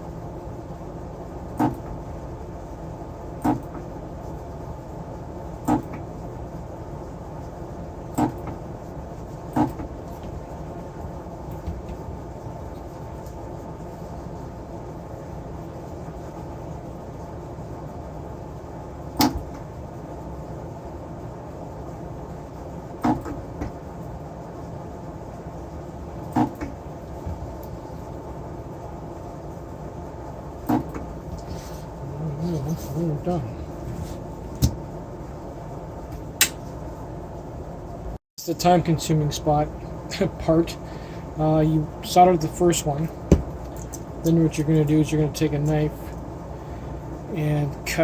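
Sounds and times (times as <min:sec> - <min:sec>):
steady low hum: 0:00.0 - 0:48.0
sharp knocks: 0:43.3 - 0:43.6.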